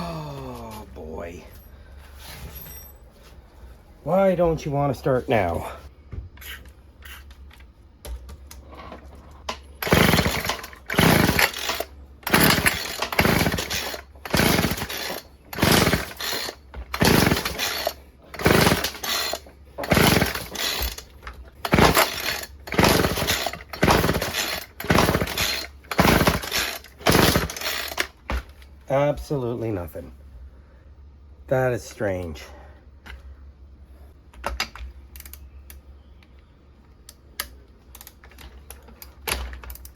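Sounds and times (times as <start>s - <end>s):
recoil starter rasping: 9.0s - 28.2s
engine turning over: 9.7s - 28.2s.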